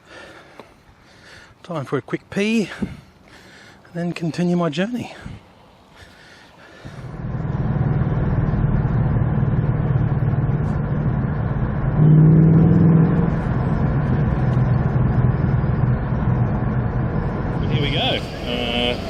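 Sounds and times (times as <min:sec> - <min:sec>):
engine running steadily: 0:06.0 - 0:19.0.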